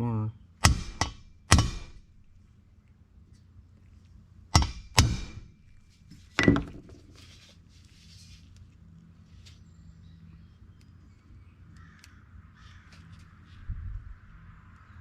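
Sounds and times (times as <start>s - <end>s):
hammer knocking on metal: 4.6s - 5.4s, 6.4s - 7.0s.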